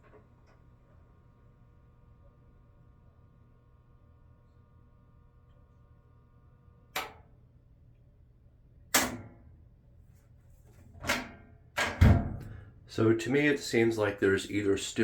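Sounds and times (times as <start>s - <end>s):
washer humming: 10.9s - 15.0s.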